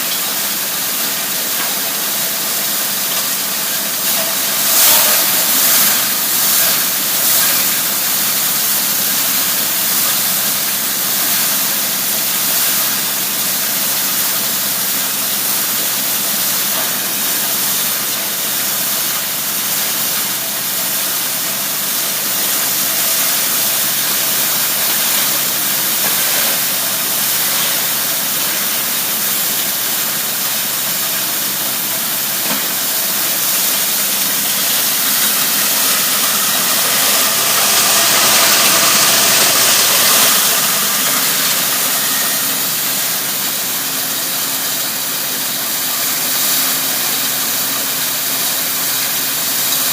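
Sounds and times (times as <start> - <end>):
scrap crusher hissing: 1.3 - 11.5, 22.1 - 45.5.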